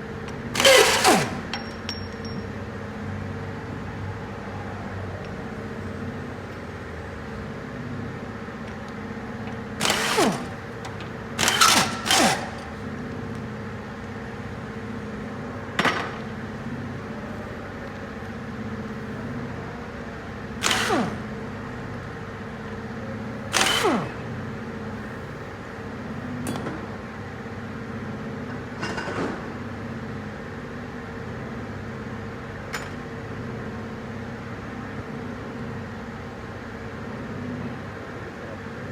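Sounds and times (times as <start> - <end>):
power wrench whirring: 0.5 - 2.4, 9.8 - 12.8, 20.6 - 21.3, 23.5 - 24.2.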